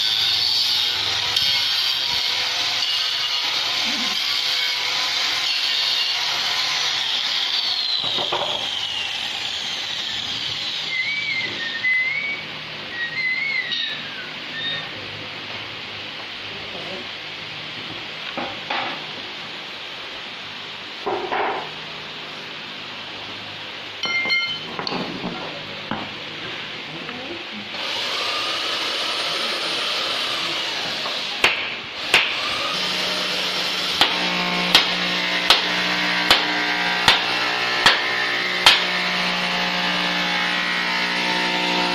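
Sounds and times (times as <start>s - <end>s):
power tool running: 0.0s - 12.2s, 27.7s - 41.9s
ringing metallic clink: 24.0s - 24.7s.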